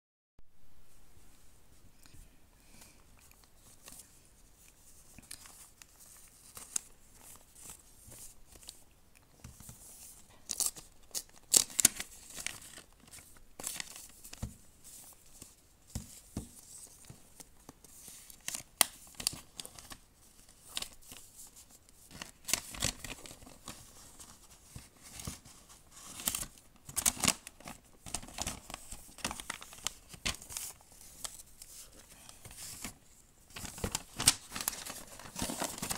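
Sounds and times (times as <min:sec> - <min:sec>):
wrapping paper tearing and crinkling: 0:10.3 - 0:14.3, 0:22.0 - 0:35.9.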